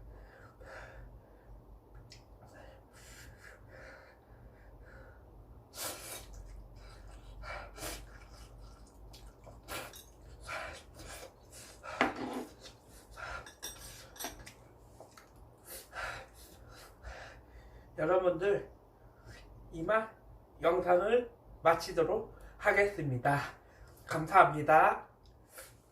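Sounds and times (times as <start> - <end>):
eating noises: 5.9 - 11.8
utensils clinking on a dish: 9.7 - 10.4, 13.3 - 14.6.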